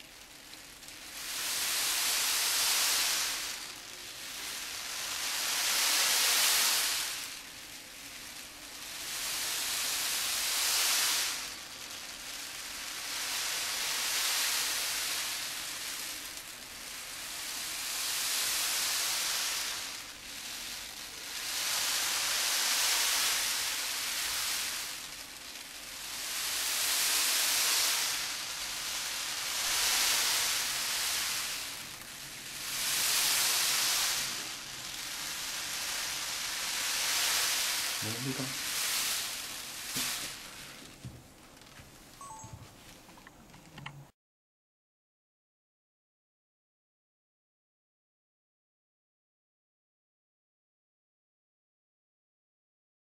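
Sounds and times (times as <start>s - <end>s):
beans rolling in a basket: 0.0s - 43.9s.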